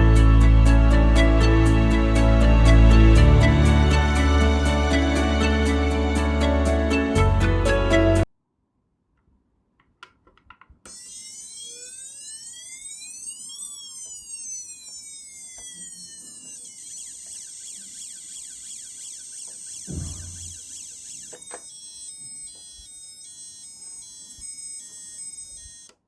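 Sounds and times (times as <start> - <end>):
clicks: 9.1 - 26.0
fast warbling siren: 10.9 - 26.0
rising and falling siren buzzer: 10.9 - 26.0.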